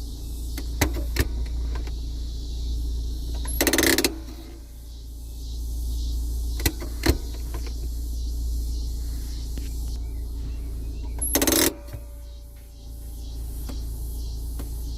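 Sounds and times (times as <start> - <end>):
handbrake ratchet clicks: 3.3 - 4.4, 11.0 - 12.0.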